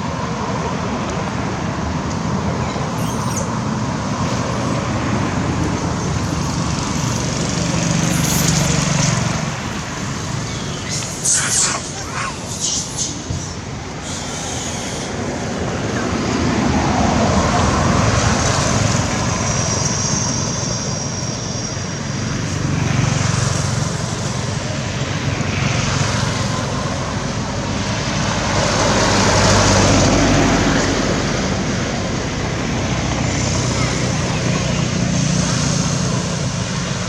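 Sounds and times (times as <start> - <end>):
motor engine rumble: 0.0 - 28.1.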